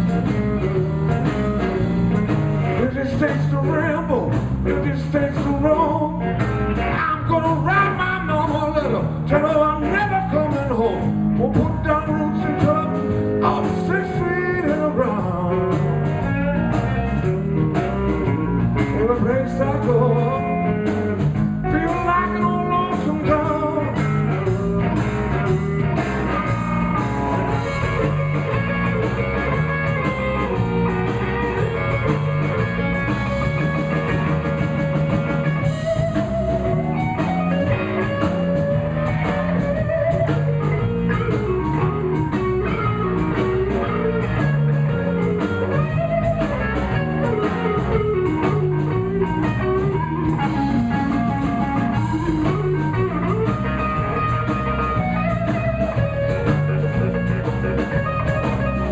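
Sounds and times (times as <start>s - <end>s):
bass: 0.0s - 58.9s
drum kit: 0.0s - 58.9s
electric guitar solo: 20.3s - 58.9s.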